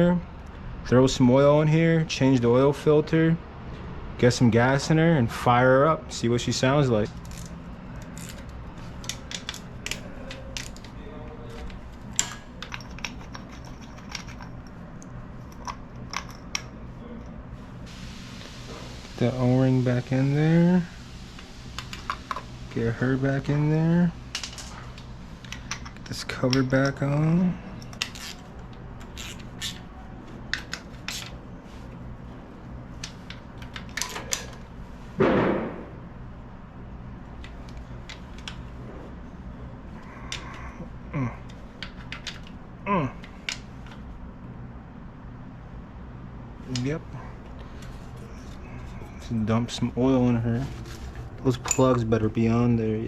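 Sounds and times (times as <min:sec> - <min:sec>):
low steady hum: 0:00.0 - 0:53.0
metal tools clicking and clinking: 0:07.1 - 0:17.4, 0:24.3 - 0:29.9, 0:33.0 - 0:34.6, 0:51.4 - 0:52.1
loud knock: 0:35.2 - 0:36.0.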